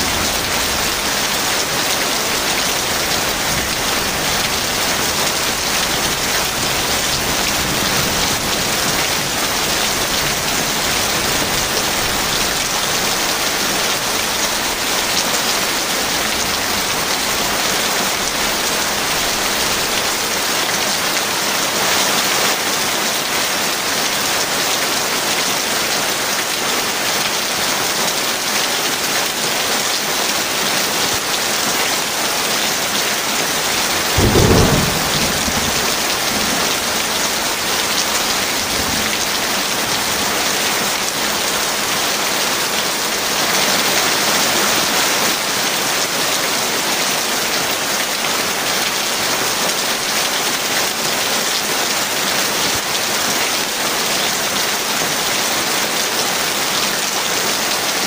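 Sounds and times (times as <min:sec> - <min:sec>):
thunderclap rumbling: 0:00.0 - 0:20.3, 0:33.6 - 0:40.9
heavy rain pouring: 0:00.0 - 0:58.0.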